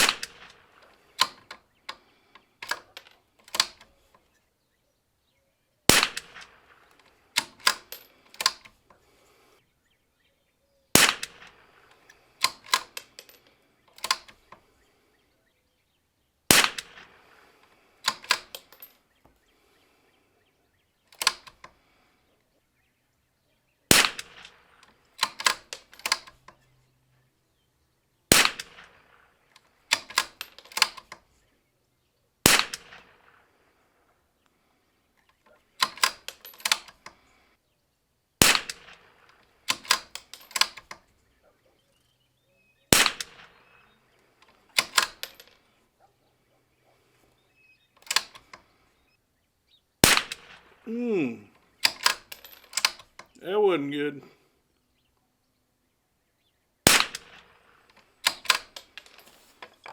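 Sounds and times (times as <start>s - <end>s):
rifle shots: 0.0s - 1.4s, 5.9s - 8.0s, 10.9s - 13.0s, 16.5s - 17.5s, 23.9s - 25.7s, 28.3s - 29.4s, 32.4s - 33.6s, 38.4s - 40.1s, 42.9s - 43.8s, 50.0s - 50.8s, 56.8s - 59.2s
rifle bolt clicking: 2.6s - 3.9s, 12.1s - 14.4s, 18.1s - 18.9s, 21.1s - 21.8s, 23.9s - 26.4s, 35.8s - 37.1s, 38.5s - 41.0s, 44.4s - 45.6s, 48.0s - 48.6s, 51.8s - 53.2s, 56.9s - 59.2s.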